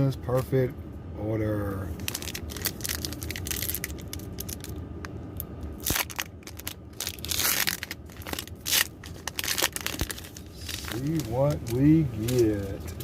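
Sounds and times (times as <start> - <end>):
card packaging crinkling: 2.0 - 4.8, 5.8 - 13.0.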